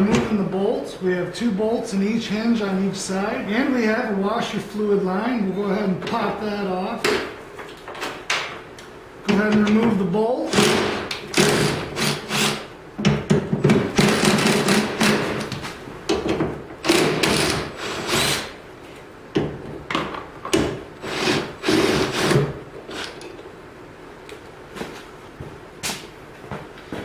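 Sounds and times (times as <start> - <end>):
power tool running in bursts: 10.5 - 12.7, 14.0 - 15.4, 16.8 - 18.5, 21.0 - 23.1.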